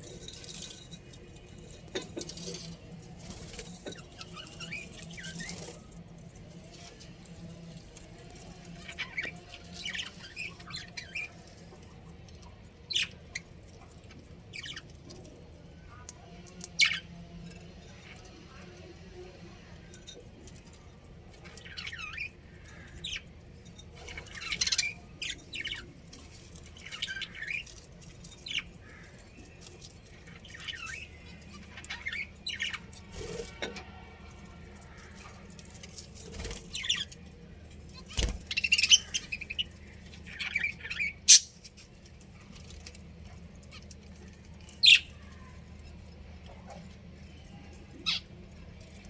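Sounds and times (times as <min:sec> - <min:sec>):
budgerigars chirping and squawking: 0:24.0 - 0:25.9, 0:30.2 - 0:32.9, 0:38.1 - 0:41.6, 0:44.8 - 0:45.2, 0:48.0 - 0:48.3.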